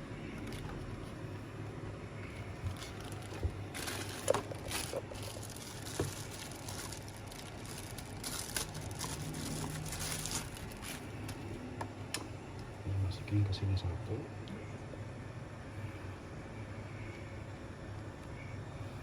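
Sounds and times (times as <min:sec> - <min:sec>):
plastic parts clicking and rustling: 0:00.4 - 0:00.9, 0:02.6 - 0:11.4.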